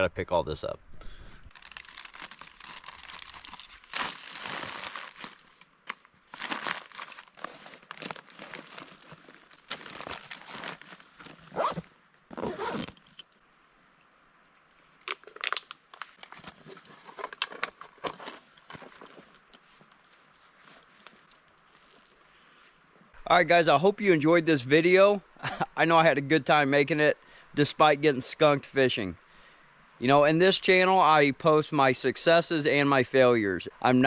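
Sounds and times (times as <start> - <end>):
plastic wrappers crinkling: 1.5 - 11.8, 15.1 - 19.0, 21.0 - 22.2.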